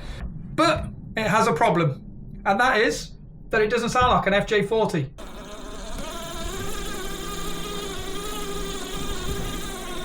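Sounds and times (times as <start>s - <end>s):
electric motor whine: 5.2s - 10.0s.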